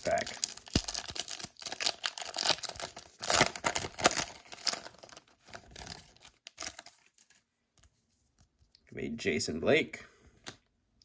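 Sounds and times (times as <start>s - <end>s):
wrapper tearing and crinkling: 0.0s - 7.1s.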